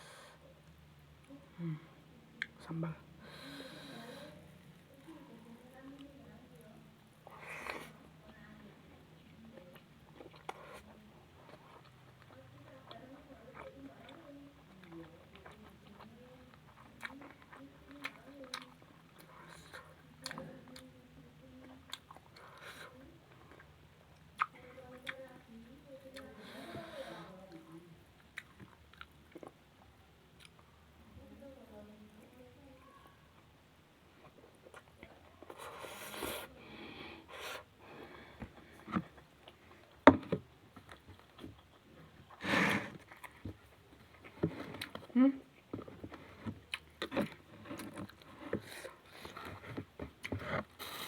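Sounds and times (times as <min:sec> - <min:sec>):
person chewing food: 0:09.6 - 0:10.8, 0:11.4 - 0:20.9, 0:28.2 - 0:30.7, 0:34.2 - 0:36.4, 0:37.3 - 0:51.0
breathy puffs or sniffs: 0:35.6 - 0:38.4, 0:42.4 - 0:43.0.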